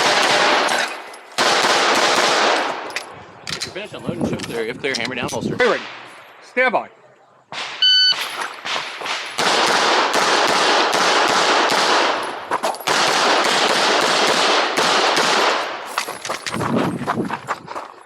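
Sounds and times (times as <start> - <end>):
shot timer beep: 7.8 - 8.2
pistol shots in rapid strings: 8.6 - 12.2, 12.9 - 15.6.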